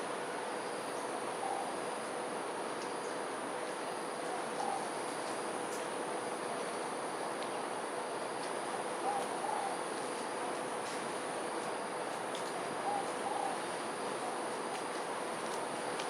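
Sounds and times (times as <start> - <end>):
faint high insect drone: 0.0 - 16.0
steady rushing hiss: 0.0 - 16.0.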